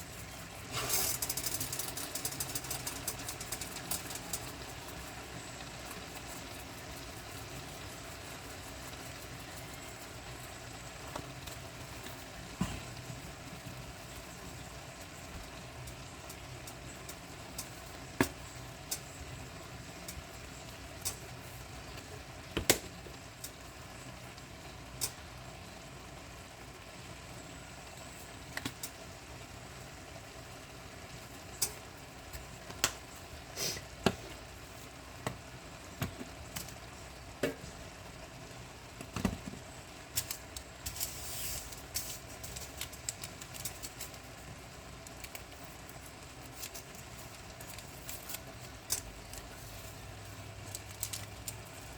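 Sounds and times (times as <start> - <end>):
short hiss: 0.7 - 1.3, 33.5 - 34.0.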